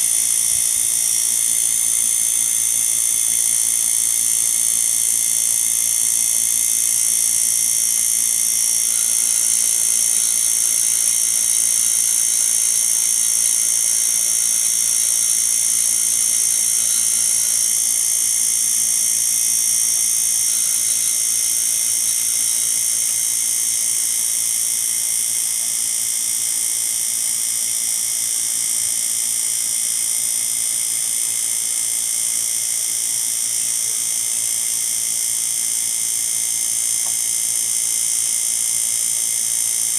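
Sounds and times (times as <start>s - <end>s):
high-pitched whine: 0.0s - 25.4s.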